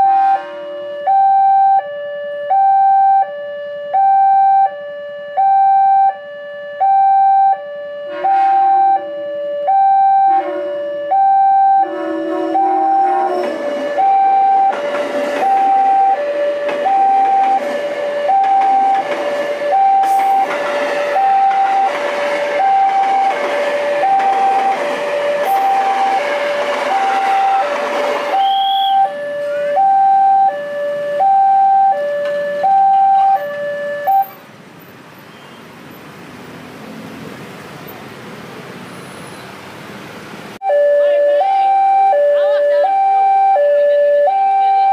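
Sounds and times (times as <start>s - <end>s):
level crossing two-tone alarm: 0.0s - 34.4s, 40.6s - 44.9s
train passing rushing noise: 11.9s - 31.2s.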